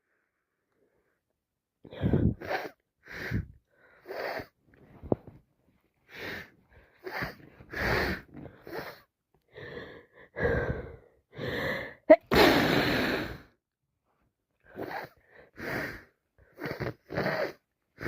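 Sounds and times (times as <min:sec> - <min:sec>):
person sniffing through blocked nose: 0:02.0 - 0:03.4, 0:04.0 - 0:04.5, 0:06.2 - 0:09.0, 0:12.3 - 0:13.5, 0:14.8 - 0:17.6.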